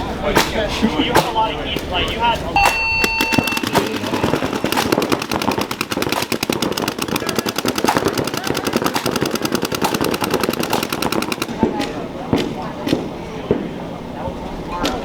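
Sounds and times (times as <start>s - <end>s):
paintball markers firing rapidly: 2.6s - 13.0s.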